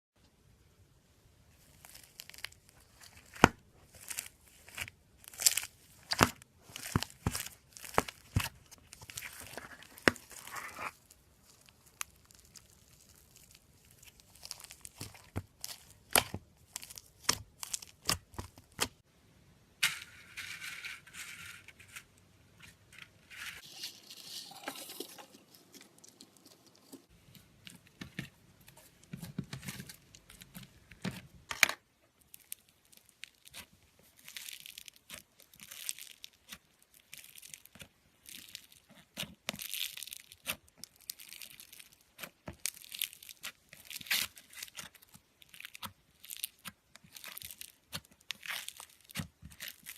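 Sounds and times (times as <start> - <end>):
slime crackling: 1.6 - 19.0, 32.1 - 49.9.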